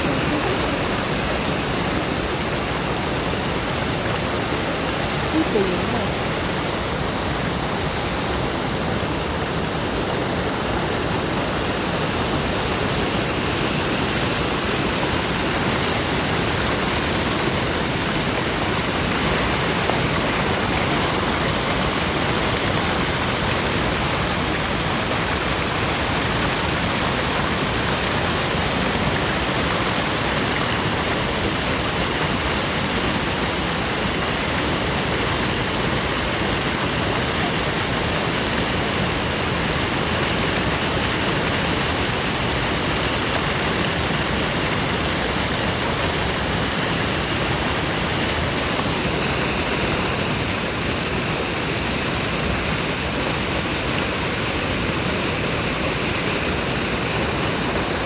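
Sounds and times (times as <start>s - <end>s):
waterfall roaring: 0.0s - 58.0s.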